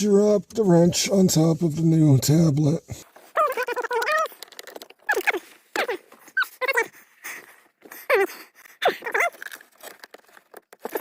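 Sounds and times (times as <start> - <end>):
dog whimpering: 3.4 - 9.4.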